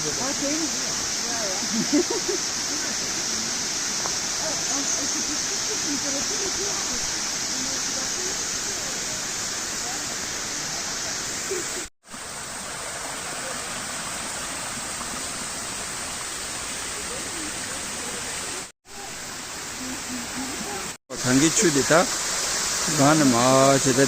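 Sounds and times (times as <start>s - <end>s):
waterfall hissing: 0.0s - 24.0s.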